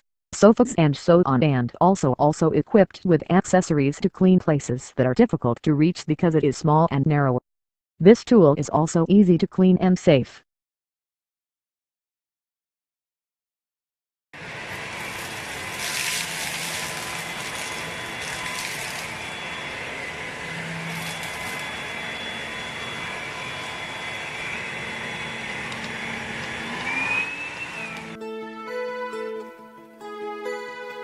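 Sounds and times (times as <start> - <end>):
stick vacuum cleaner running: 14.4 - 28.2.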